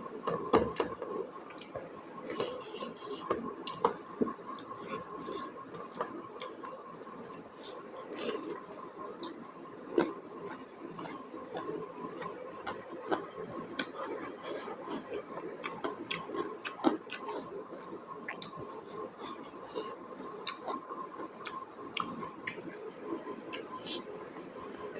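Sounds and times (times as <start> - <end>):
wet chewing sounds: 0.2 - 22.8.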